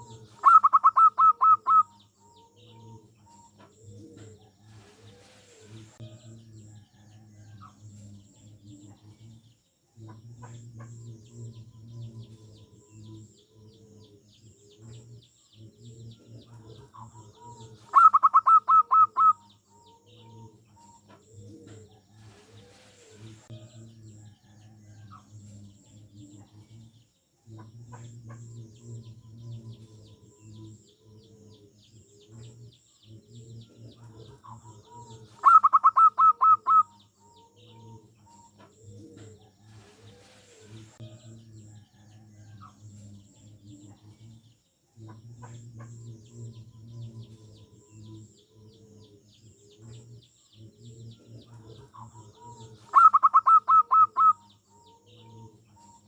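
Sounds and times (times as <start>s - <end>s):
rapid high chirping: 0.0s - 1.9s, 17.8s - 19.4s, 35.3s - 37.0s, 52.8s - 54.5s
doves cooing: 0.0s - 6.0s, 10.1s - 23.5s, 27.6s - 41.0s, 45.1s - 56.0s.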